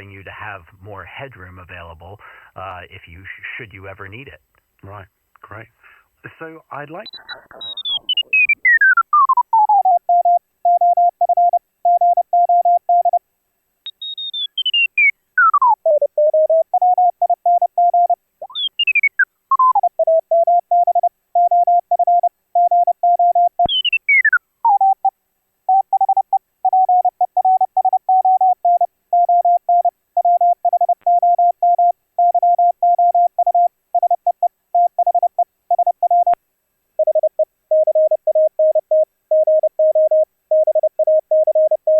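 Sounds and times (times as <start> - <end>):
morse code tone: 37.0 - 41.9.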